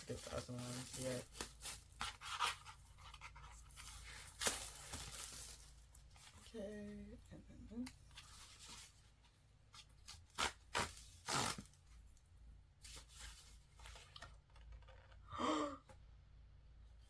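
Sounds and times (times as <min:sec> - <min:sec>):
packaging rustling: 0:00.0 - 0:06.4.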